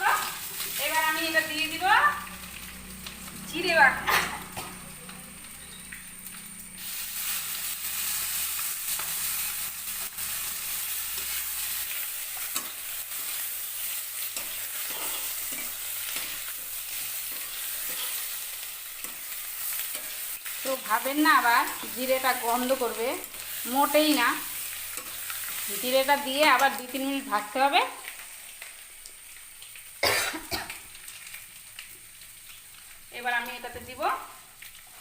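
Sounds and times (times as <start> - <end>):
food sizzling in oil: 0.0 - 35.0
spatula scraping pan: 14.3 - 18.4.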